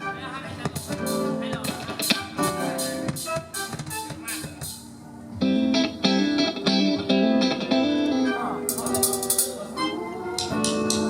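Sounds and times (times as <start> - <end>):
band playing: 0.0 - 11.0
drum hits: 0.6 - 4.9
strummed guitar chords: 0.7 - 11.0
sparse guitar notes: 1.0 - 11.0.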